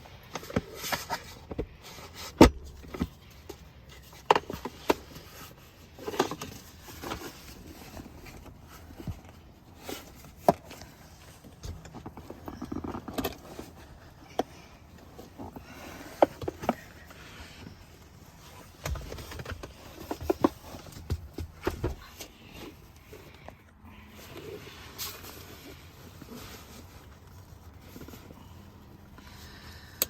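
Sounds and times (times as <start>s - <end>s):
car seat knocks and clicks: 18.8s - 22.2s.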